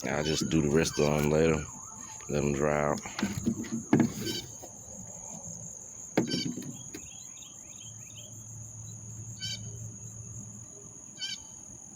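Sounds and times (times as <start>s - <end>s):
insects droning: 0.0s - 11.9s
knock of object handled: 3.2s - 4.6s, 6.2s - 7.0s.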